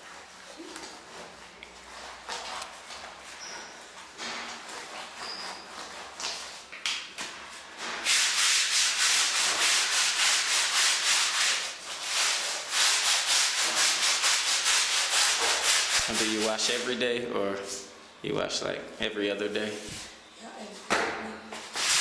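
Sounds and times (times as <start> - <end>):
clothes scrubbed by hand in water: 0.0 - 16.9.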